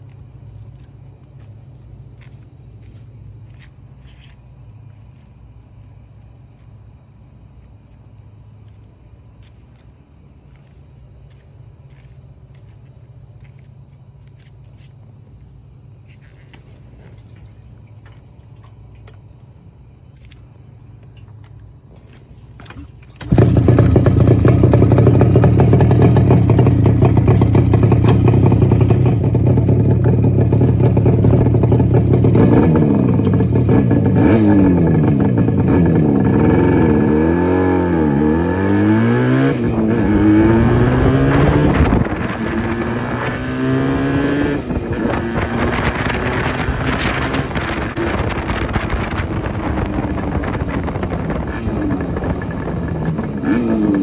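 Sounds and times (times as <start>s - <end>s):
two-stroke motorcycle engine revving: 23.2s - 54.0s.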